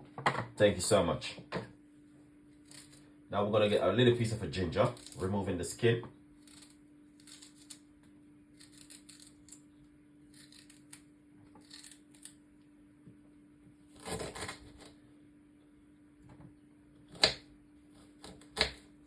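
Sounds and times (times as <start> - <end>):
scraping ginger skin: 2.5 - 5.6, 6.4 - 7.9, 8.5 - 12.4, 13.9 - 15.0.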